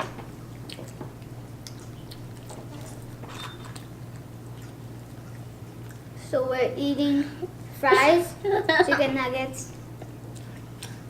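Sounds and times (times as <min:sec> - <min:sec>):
children chewing food: 0:00.0 - 0:06.3, 0:09.7 - 0:11.0.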